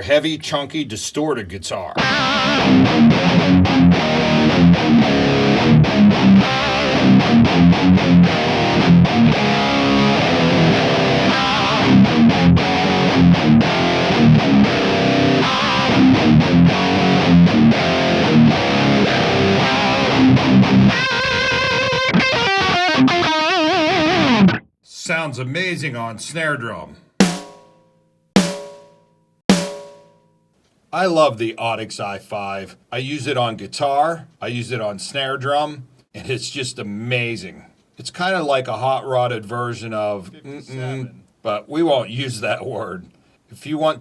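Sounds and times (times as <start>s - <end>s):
distorted electric guitar: 2.0s - 21.4s.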